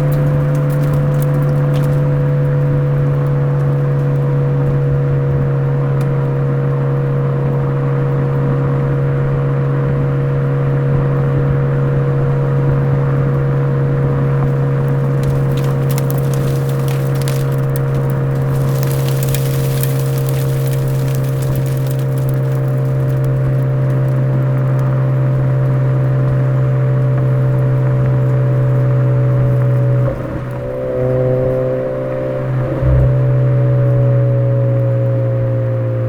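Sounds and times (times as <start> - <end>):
exhaust crackling: 0.0 - 5.1, 14.2 - 35.5
car engine droning steadily: 0.0 - 16.7, 17.7 - 36.0.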